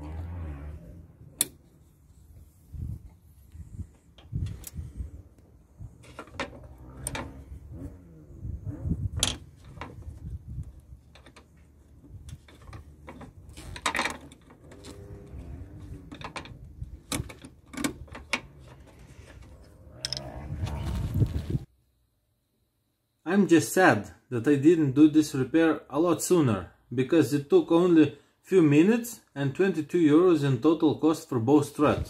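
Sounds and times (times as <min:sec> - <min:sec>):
low rumble: 0:18.6 - 0:21.7.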